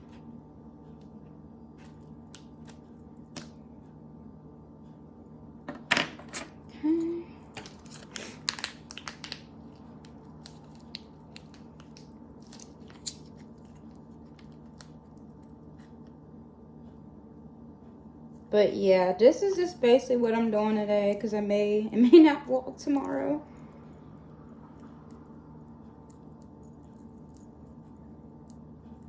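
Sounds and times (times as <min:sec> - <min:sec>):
crinkling: 0:07.5 - 0:15.5.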